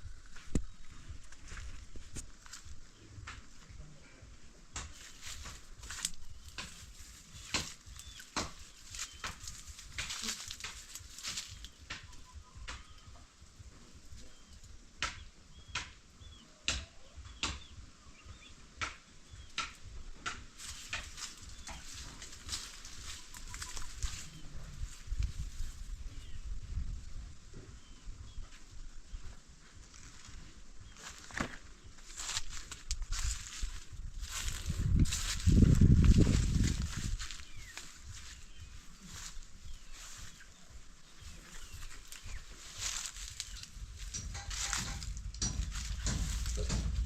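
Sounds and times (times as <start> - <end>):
chickens scratching and flapping: 4.9 - 12.8, 20.6 - 25.8, 29.9 - 47.0.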